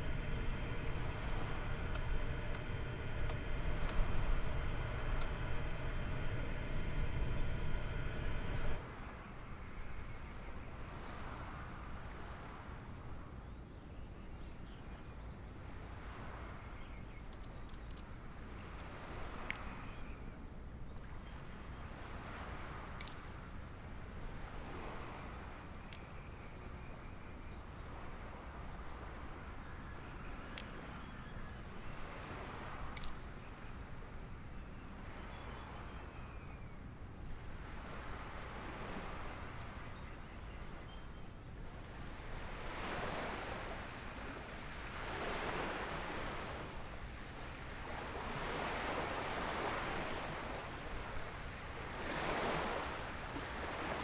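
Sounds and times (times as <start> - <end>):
sharp clicks: 0.0 - 8.8, 17.3 - 19.9, 23.0 - 23.4, 30.6 - 33.4
small waves washing onto shore: 41.7 - 54.0.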